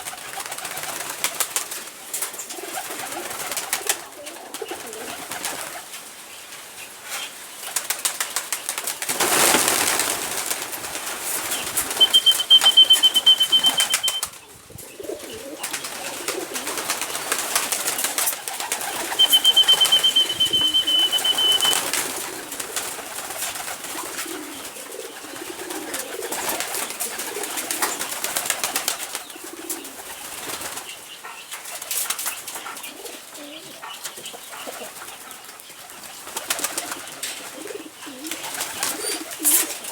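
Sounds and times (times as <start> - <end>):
beaks pecking at feeder: 11.9 - 14.2, 18.8 - 21.9
high trills: 12.0 - 14.2, 19.0 - 21.8
chickens clucking: 18.8 - 22.4.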